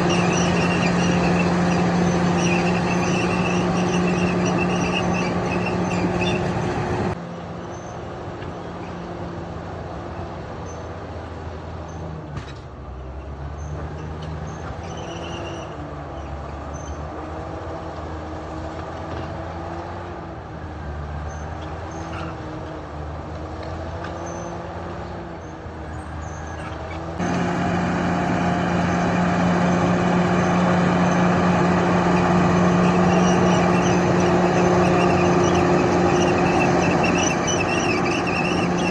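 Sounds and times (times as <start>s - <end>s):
bulldozer diesel engine running: 0.0s - 7.2s, 26.1s - 38.9s.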